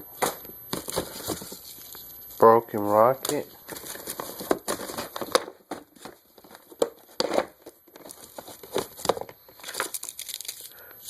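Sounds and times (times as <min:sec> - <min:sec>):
wrappers crinkling: 0:08.0 - 0:10.9.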